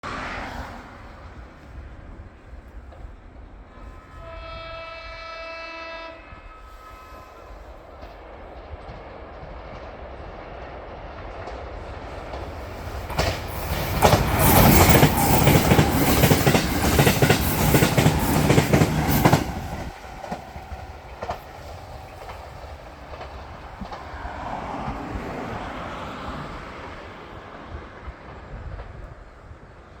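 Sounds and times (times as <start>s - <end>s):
train horn: 3.6s - 8.3s
train wheels clickety-clack: 8.0s - 30.0s.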